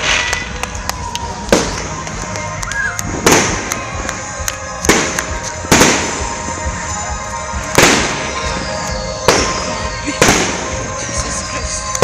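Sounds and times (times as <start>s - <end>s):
firework pops and crackles: 0.0s - 6.4s, 7.7s - 8.5s, 9.2s - 12.0s
firework bangs: 0.0s - 12.0s.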